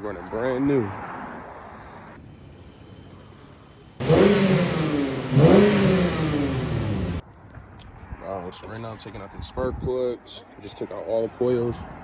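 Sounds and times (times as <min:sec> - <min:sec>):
car engine revving: 0:04.0 - 0:07.2.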